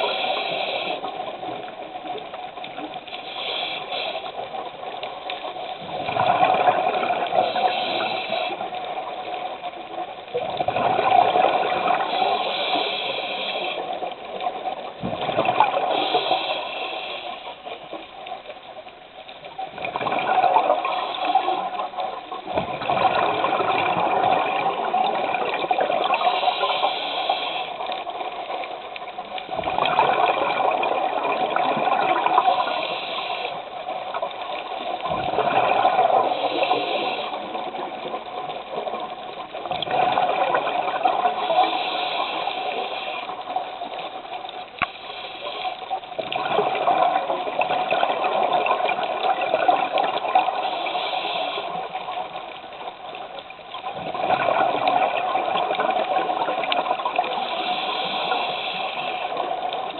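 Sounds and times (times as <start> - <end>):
diver breathing through regulator: 0.0 - 1.2, 3.2 - 4.4, 7.0 - 8.8, 11.8 - 14.0, 15.7 - 17.7, 26.0 - 28.1, 32.3 - 33.7, 36.0 - 37.6, 41.3 - 43.3, 44.8 - 45.9, 50.5 - 52.0, 57.3 - 59.4
exhaled bubbles gurgling: 0.0 - 59.9.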